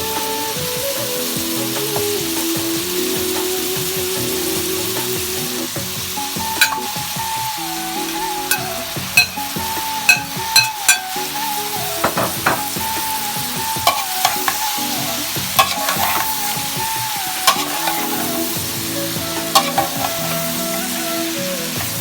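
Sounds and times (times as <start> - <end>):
food sizzling in hot oil: 0.0 - 22.0
utensil knocking against pan: 12.0 - 12.8.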